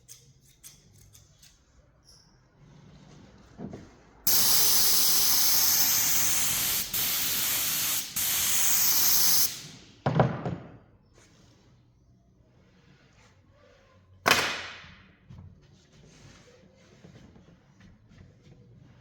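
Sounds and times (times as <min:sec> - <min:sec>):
spray hissing: 0:04.3 - 0:09.9.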